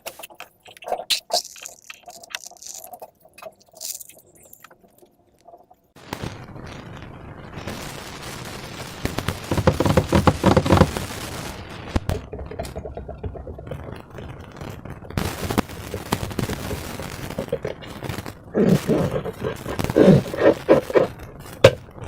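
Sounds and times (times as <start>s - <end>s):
slime crackling and popping: 0.0s - 6.7s, 8.7s - 22.0s
scraping: 9.5s - 11.1s.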